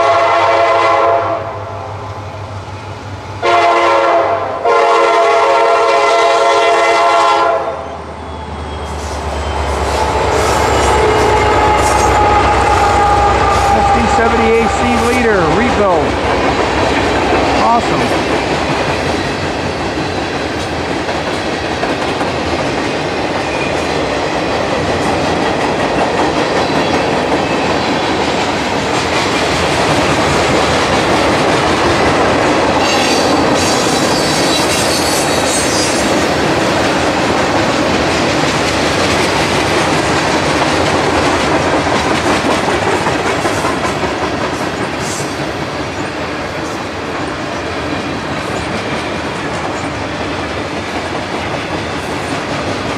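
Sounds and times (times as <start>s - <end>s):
train cars rumbling past: 0.0s - 52.9s
high wheel squeal: 8.1s - 14.0s, 32.9s - 36.3s.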